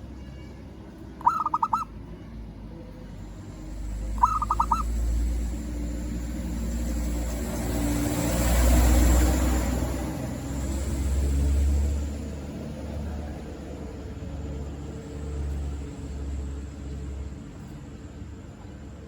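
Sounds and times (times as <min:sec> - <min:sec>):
vehicle rumble: 0:00.0 - 0:19.0
dove cooing: 0:01.2 - 0:01.9, 0:04.2 - 0:04.9.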